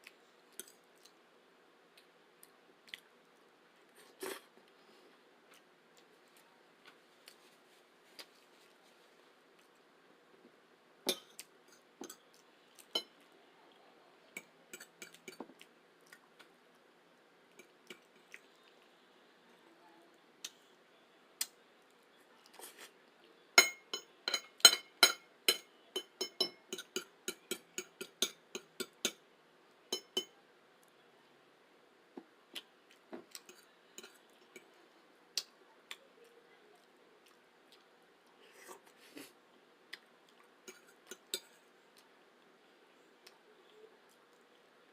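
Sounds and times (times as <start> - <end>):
cutlery clinking against dish: 14.4 - 15.5, 23.6 - 29.2, 29.9 - 30.3.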